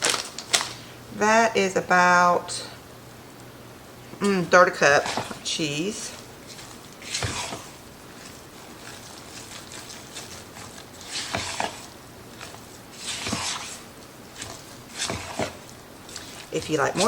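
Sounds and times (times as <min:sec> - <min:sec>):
spoon stirring batter in bowl: 0:04.2 - 0:17.0.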